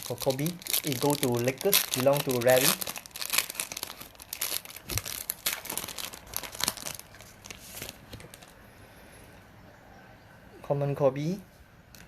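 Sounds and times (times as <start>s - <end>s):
wrapper tearing and crinkling: 0.0s - 8.6s.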